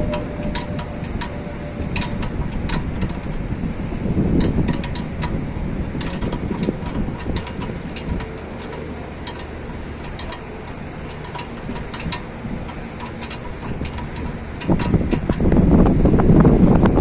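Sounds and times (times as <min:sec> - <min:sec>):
hand tools clicking: 0:00.0 - 0:03.4, 0:06.0 - 0:15.6
background rush of noise: 0:00.0 - 0:17.0.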